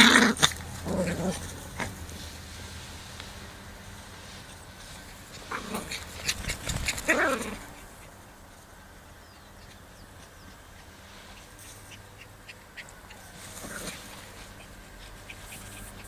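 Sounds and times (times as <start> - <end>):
dogs scuffling and snapping: 4.4 - 8.0.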